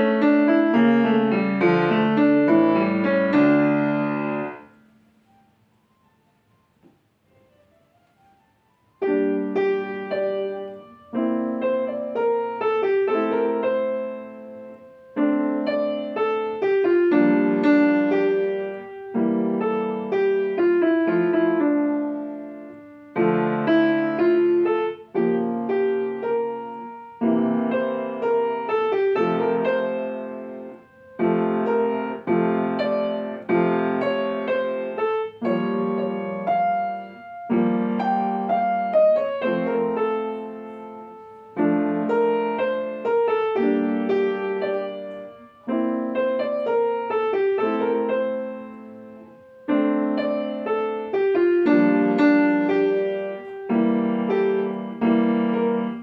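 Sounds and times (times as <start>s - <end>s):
solo piano classical piece: 0.0s - 56.0s.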